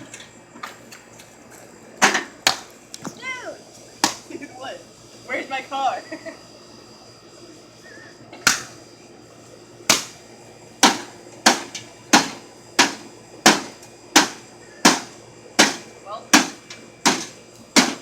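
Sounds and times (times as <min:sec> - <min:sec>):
hand striking microwave oven: 0:10.8 - 0:18.0.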